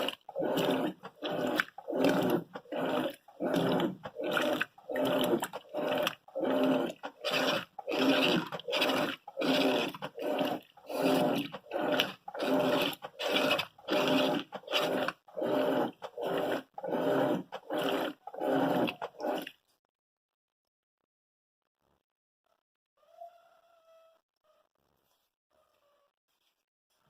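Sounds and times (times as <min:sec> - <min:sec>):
washing machine agitating: 0:00.0 - 0:19.6.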